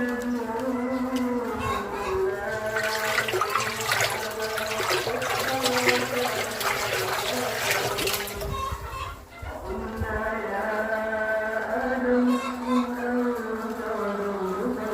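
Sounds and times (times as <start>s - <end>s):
water running into a drum: 2.5s - 8.7s.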